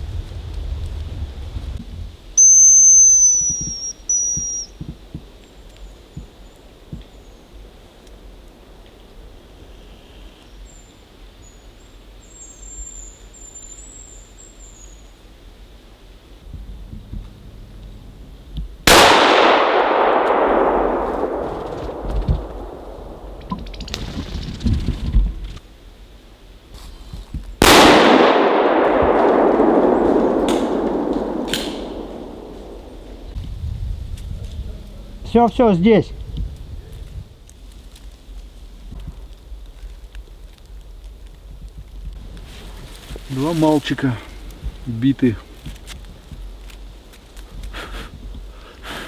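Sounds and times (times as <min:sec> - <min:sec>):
high thin bird whistles: 0:02.4 - 0:04.8
gunshot with echo: 0:18.9 - 0:24.0, 0:27.6 - 0:33.4
low background noise: 0:25.2 - 0:48.9.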